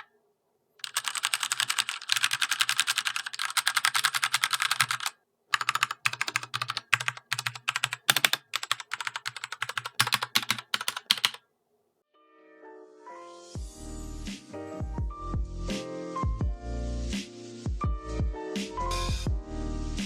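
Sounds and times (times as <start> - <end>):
mechanical keyboard typing: 0.8 - 11.4
soft background music: 12.0 - 20.0.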